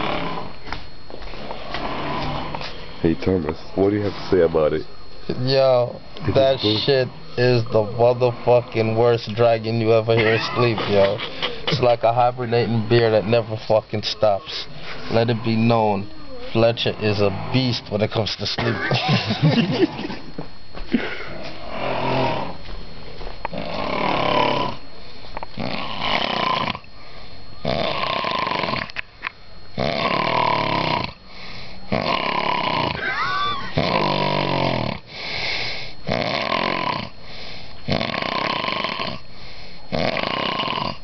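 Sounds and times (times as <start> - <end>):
man snoring heavily: 0.0 - 0.6, 1.5 - 2.6, 21.3 - 22.6, 23.5 - 24.8, 25.6 - 26.9, 27.6 - 28.9, 29.7 - 41.0.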